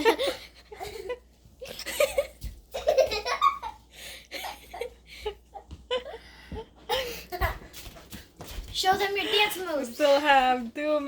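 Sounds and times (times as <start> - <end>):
people laughing and giggling: 0.0 - 7.8.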